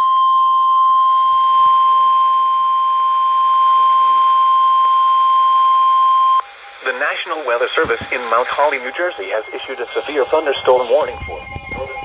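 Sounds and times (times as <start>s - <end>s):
steady warning alarm tone: 2.4s - 12.0s.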